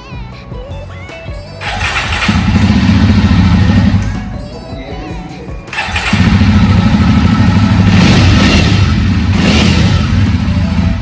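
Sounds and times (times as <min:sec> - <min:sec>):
motorcycle engine revving: 0:01.6 - 0:04.2, 0:05.7 - 0:11.0.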